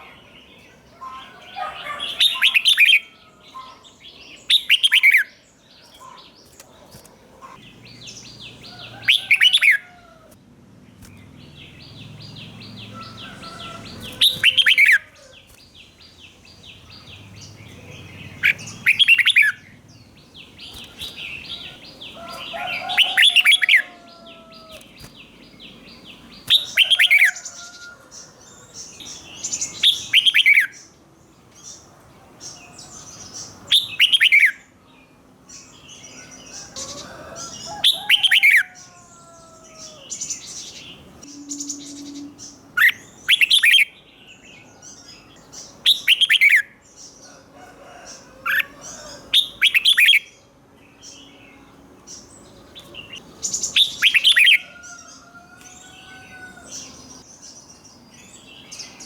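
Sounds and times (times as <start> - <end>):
bulbul singing sweeping phrases: 15.9 - 23.9, 40.3 - 43.8.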